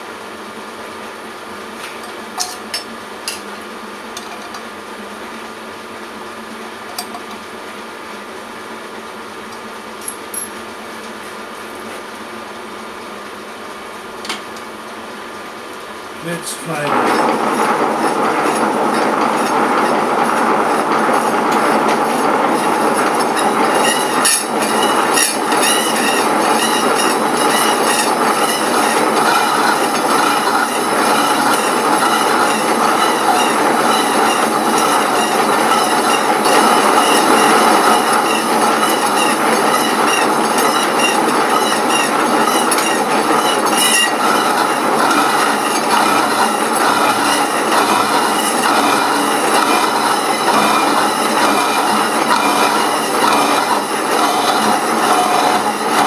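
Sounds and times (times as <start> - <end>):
power saw cutting metal: 16.3 - 56.0.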